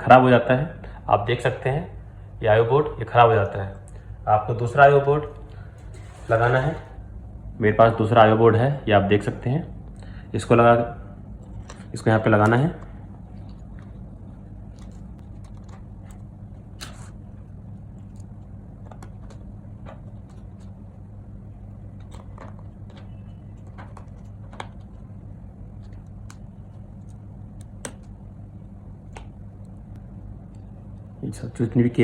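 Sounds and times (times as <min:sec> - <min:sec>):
steady low hum: 0:00.0 - 0:32.0
small clicks and taps: 0:25.8 - 0:28.2.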